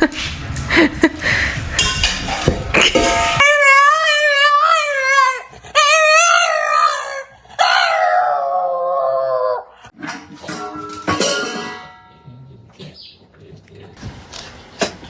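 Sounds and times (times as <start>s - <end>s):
dog howling: 3.4s - 9.8s.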